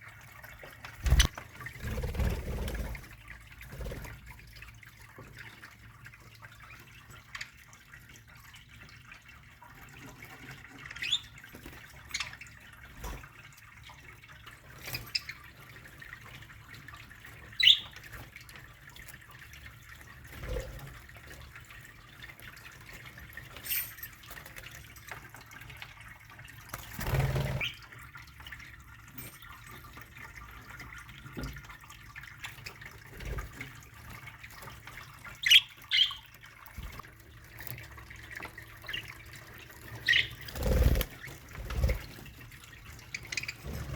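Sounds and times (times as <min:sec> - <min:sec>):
budgerigars chirping: 0:17.6 - 0:17.9, 0:35.4 - 0:36.2, 0:40.0 - 0:40.4.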